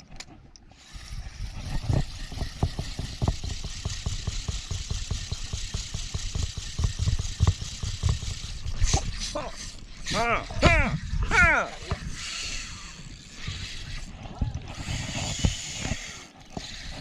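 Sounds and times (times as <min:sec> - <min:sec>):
boat engine rumbling: 0:00.9 - 0:17.0.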